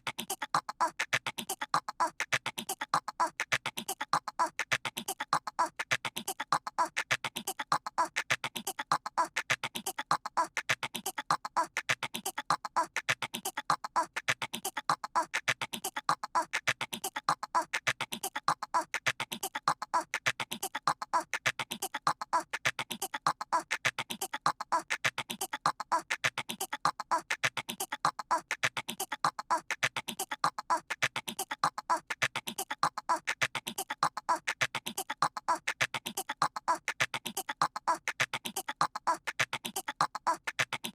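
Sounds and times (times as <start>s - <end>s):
voice imitating squirrel chattering: 0.0s - 40.9s.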